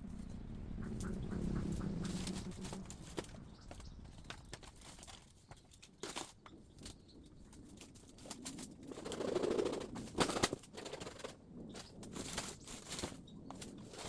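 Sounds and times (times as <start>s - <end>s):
bamboo and dry leaves rustling: 0.0s - 14.0s.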